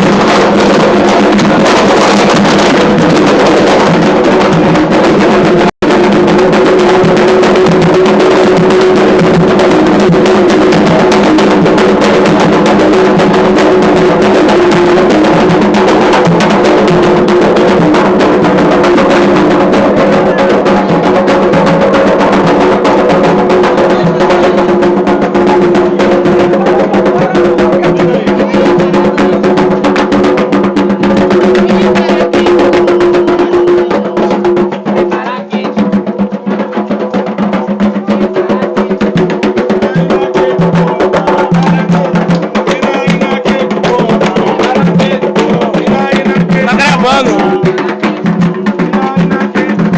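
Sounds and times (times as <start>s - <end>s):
hand drums drumming: 0.0s - 49.9s
wood block clicking percussion: 38.8s - 49.9s.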